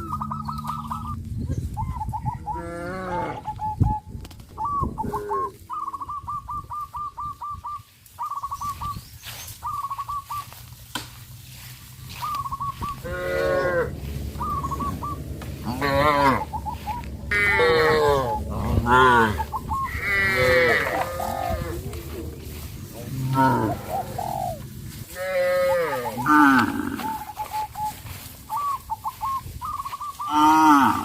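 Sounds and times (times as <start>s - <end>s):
cattle mooing: 2.5s - 3.5s, 13.0s - 27.4s, 30.3s - 31.0s
steady low hum: 10.6s - 25.2s
rapid chattering trills: 13.8s - 24.6s.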